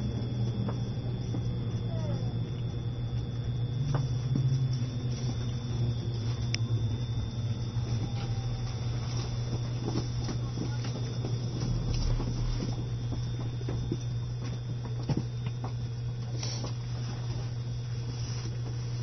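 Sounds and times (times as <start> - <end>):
train car low hum: 0.0 - 19.0
faint clicks and knocks: 0.1 - 16.8.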